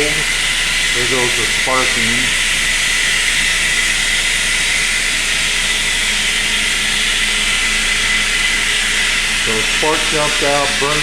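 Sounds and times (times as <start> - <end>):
steady high tone: 1.0 - 2.4, 9.4 - 11.0
machine sparking hiss: 9.2 - 11.0.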